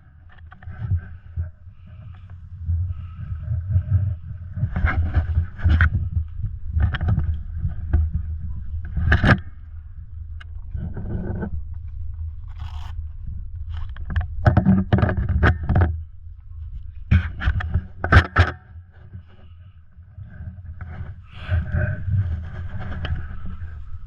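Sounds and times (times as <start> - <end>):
steady low rumble: 0.0 - 24.0
scraping and rustling: 12.4 - 13.1, 20.3 - 24.0.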